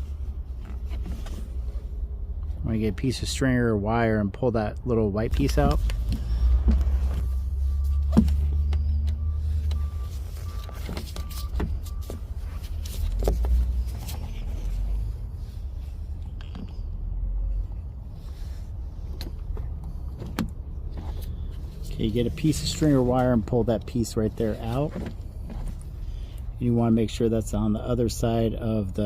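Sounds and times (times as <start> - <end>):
steady low rumble: 0.0 - 29.0.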